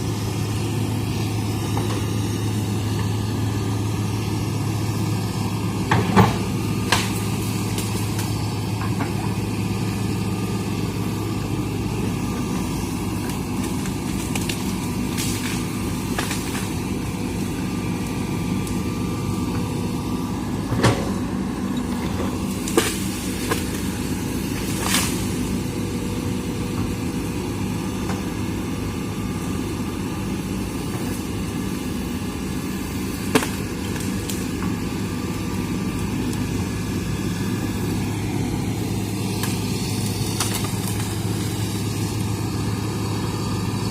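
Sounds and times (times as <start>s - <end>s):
excavator diesel engine running: 0.0s - 43.9s
bamboo snapping: 6.8s - 8.4s, 13.2s - 16.8s, 22.5s - 25.4s, 33.2s - 34.8s, 39.3s - 42.3s.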